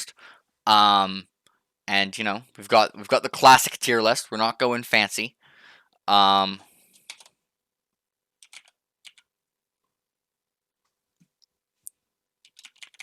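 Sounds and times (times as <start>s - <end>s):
faint keyboard clicks: 6.9s - 7.4s, 8.4s - 9.3s, 10.8s - 13.0s.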